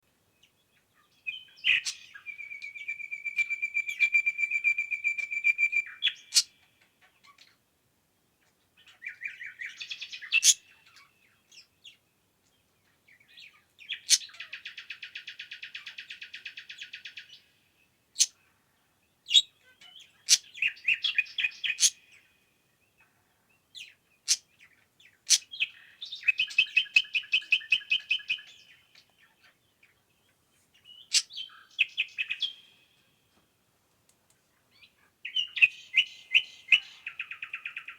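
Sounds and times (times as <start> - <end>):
songbirds trilling: 0.4 - 7.6, 18.2 - 33.2, 34.4 - 37.9.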